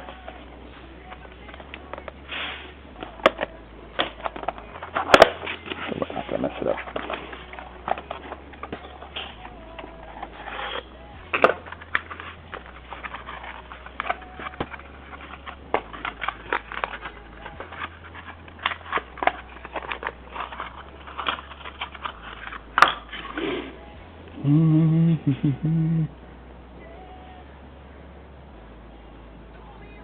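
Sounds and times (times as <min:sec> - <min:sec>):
hands handling computer parts: 0:01.1 - 0:23.4.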